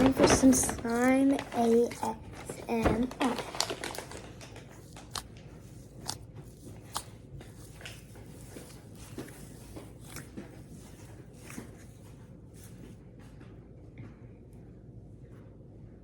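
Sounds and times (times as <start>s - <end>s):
hands squishing slime: 0.0s - 12.8s.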